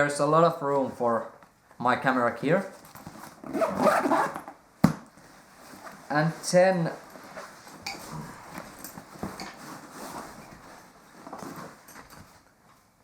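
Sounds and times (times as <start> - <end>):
fabric rustling: 2.6 - 4.4, 5.1 - 13.0.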